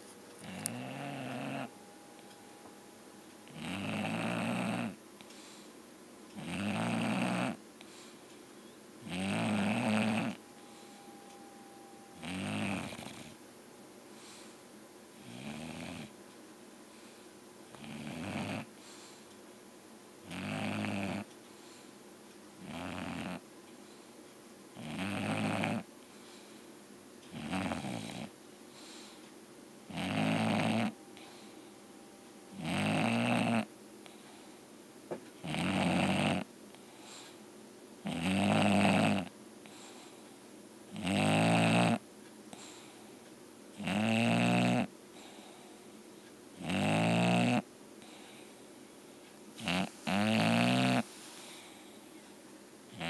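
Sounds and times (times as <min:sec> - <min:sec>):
dog snoring: 0:00.4 - 0:01.7, 0:03.4 - 0:05.0, 0:06.4 - 0:07.6, 0:09.0 - 0:11.0, 0:12.2 - 0:13.4, 0:15.2 - 0:16.2, 0:17.7 - 0:18.7, 0:20.2 - 0:21.3, 0:22.6 - 0:23.4, 0:24.8 - 0:25.9, 0:27.3 - 0:28.3, 0:29.9 - 0:31.6, 0:32.5 - 0:33.7, 0:35.4 - 0:36.5, 0:38.0 - 0:39.9, 0:40.9 - 0:42.0, 0:43.8 - 0:45.5, 0:46.6 - 0:48.2, 0:49.6 - 0:51.8.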